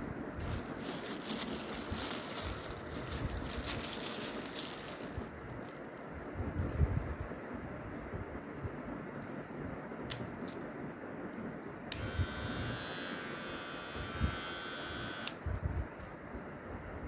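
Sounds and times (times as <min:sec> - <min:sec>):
electric hair trimmer buzzing: 0:11.9 - 0:15.4.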